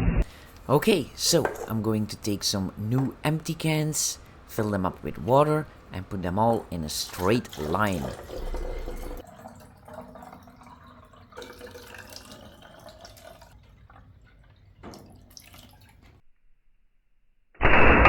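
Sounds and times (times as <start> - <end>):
tap water filling cans: 0.4 - 3.1, 5.4 - 16.2.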